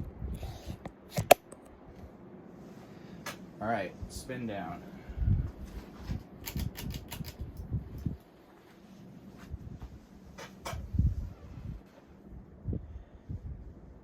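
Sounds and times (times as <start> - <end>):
sharp clicks: 6.4 - 7.7.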